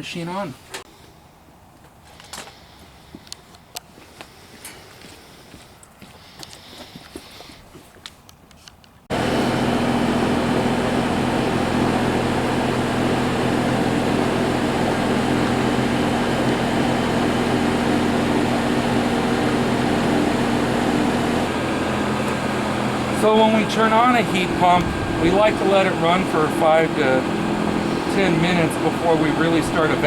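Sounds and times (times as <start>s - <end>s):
compressor hum: 9.1s - 30.0s
condenser fan rushing: 9.1s - 30.0s.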